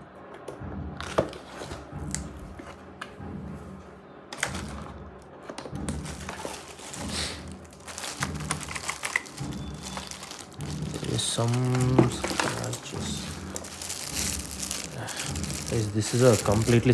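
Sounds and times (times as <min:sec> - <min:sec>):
cardboard box rustling and scraping: 0:05.5 - 0:16.9.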